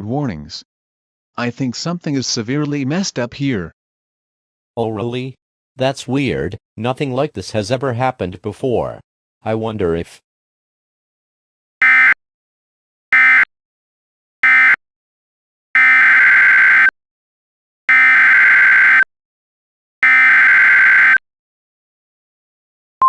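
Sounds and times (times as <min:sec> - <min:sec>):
buzzing digital data bursts: 0:11.8 - 0:12.2, 0:13.2 - 0:13.5, 0:20.0 - 0:21.2.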